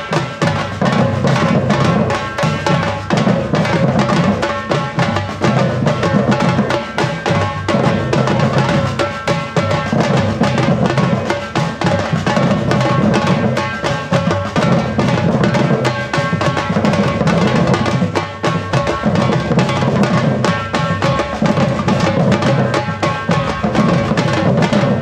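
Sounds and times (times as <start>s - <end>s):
percussion band drumming: 0.0s - 25.0s.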